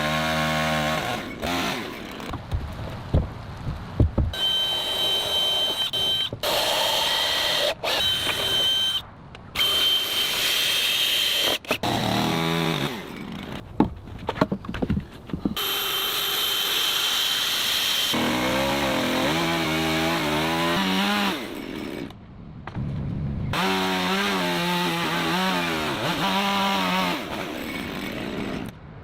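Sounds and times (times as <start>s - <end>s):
power tools cutting timber: 0.0s - 2.4s, 4.3s - 9.0s, 9.6s - 13.6s, 15.6s - 22.2s, 23.6s - 28.8s.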